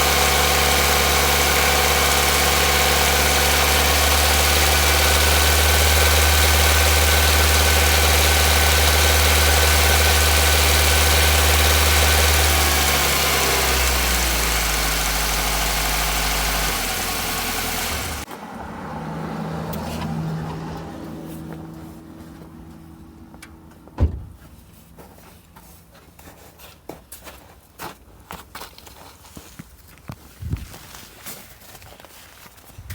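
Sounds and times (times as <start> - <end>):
car engine running: 0.0 - 24.6
sharp thump: 24.0 - 24.5.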